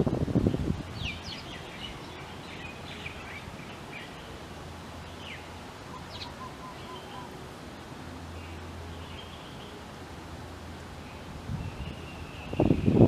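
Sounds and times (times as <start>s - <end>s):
wind on microphone: 0.0s - 2.0s, 11.2s - 13.0s
songbirds chirping: 0.2s - 13.0s
low evenly spaced bird notes: 0.3s - 13.0s.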